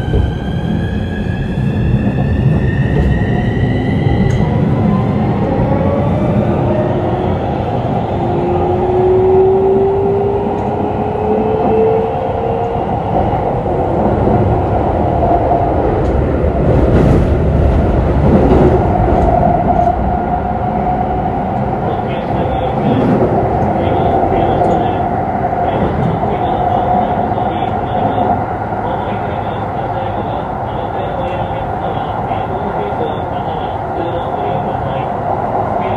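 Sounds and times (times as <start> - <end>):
wheels rumbling on rail: 0.0 - 35.9.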